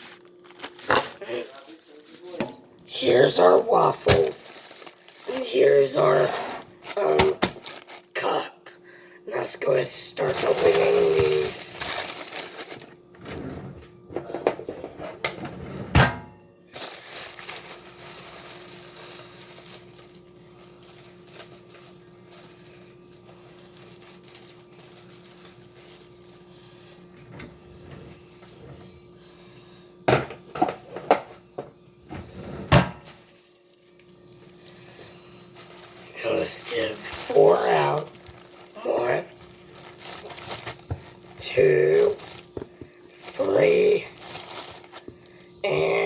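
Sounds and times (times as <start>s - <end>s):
packaging crinkling: 0.0s - 8.4s, 9.7s - 13.0s, 16.7s - 26.8s, 33.0s - 46.0s
faint steady hum: 0.0s - 46.0s.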